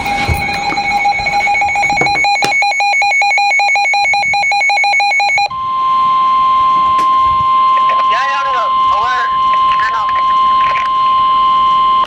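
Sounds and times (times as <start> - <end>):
rapid even beeping: 0.0 - 5.5
weather radio alarm tone: 0.0 - 12.0.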